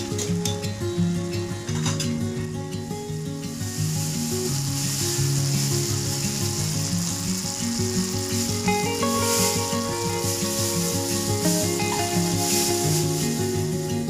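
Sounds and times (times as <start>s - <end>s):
food sizzling in a pan: 3.1s - 14.0s.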